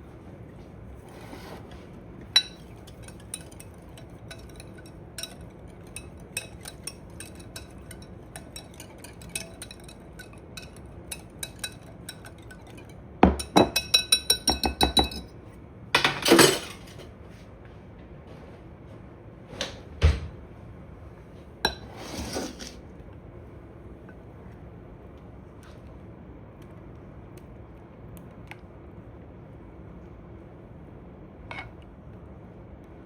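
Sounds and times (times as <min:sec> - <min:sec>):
whisk scraping bowl: 0:01.1 - 0:15.2, 0:21.7 - 0:22.8
whisk clinking against bowl: 0:02.4 - 0:15.3.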